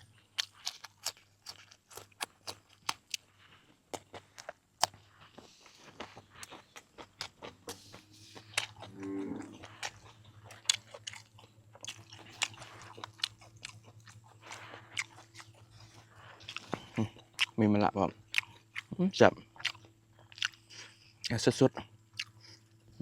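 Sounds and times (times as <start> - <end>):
person chewing and crunching: 0.0 - 23.0
person humming: 8.9 - 9.7.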